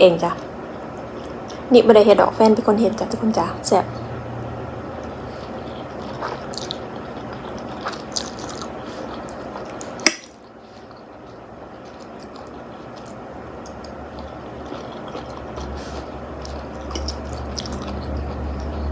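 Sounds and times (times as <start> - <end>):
wet chewing and squishing: 5.0 - 18.9.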